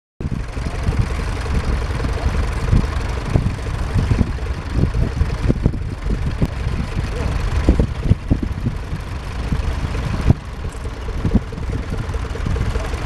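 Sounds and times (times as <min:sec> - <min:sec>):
tractor engine rumbling: 0:00.2 - 0:13.0.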